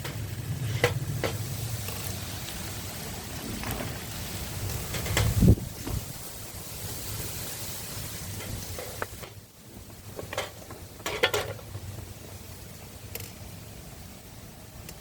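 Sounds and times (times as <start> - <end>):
food sizzling in a pan: 1.2 - 9.3.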